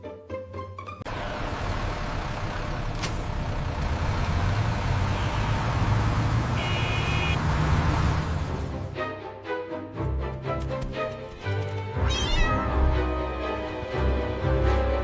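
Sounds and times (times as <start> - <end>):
bus engine rumble: 1.0 - 9.0
road and traffic noise: 1.0 - 9.0.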